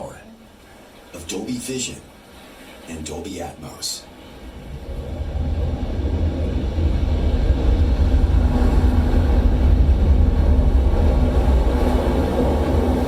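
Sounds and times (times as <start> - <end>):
deep bass rumble: 4.5 - 13.0.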